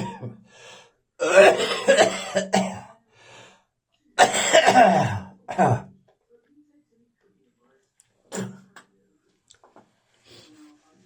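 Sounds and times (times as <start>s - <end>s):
person coughing in fits: 0.0s - 0.4s, 1.2s - 2.9s, 4.2s - 5.9s, 8.4s - 8.6s.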